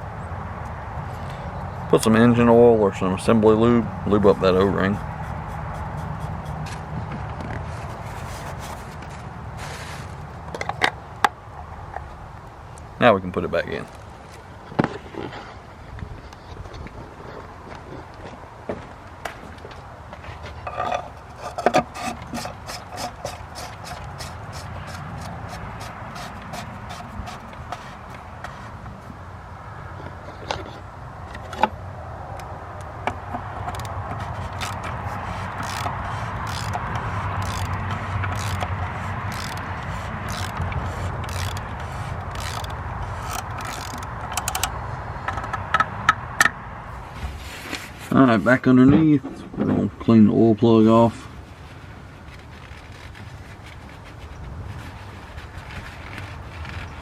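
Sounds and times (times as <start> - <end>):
plastic rubbing and scraping: 4.2 - 11.0, 20.2 - 29.2, 33.1 - 45.8, 46.9 - 49.9, 51.1 - 57.0.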